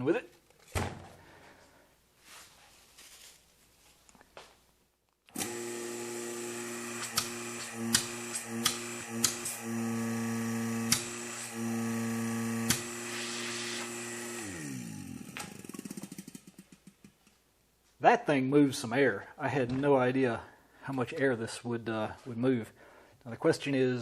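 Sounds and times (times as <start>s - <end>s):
vacuum pump humming: 5.3s - 16.8s
sharp clicks: 7.1s - 9.5s, 10.9s - 11.1s.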